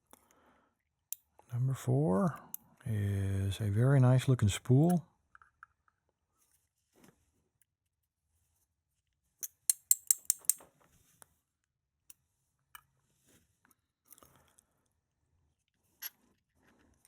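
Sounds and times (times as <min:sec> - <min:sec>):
sharp light metallic clicks: 0:09.7 - 0:10.6.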